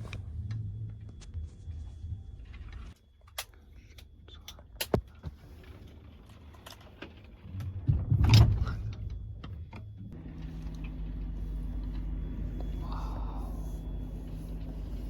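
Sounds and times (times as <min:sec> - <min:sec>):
low machinery hum: 0:00.0 - 0:15.0
train carriage rumbling jolt: 0:07.6 - 0:09.3.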